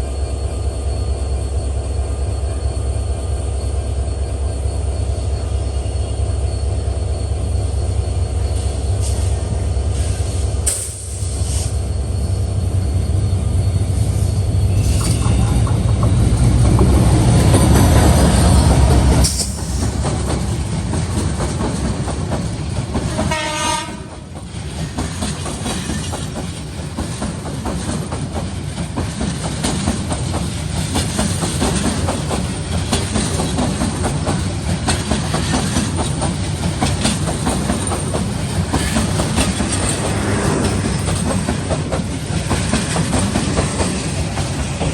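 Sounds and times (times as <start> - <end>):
train rumbling: 0.0 - 44.9
wheels clattering over rail joints: 14.8 - 23.3, 24.2 - 44.9
train horn blast: 23.1 - 24.3.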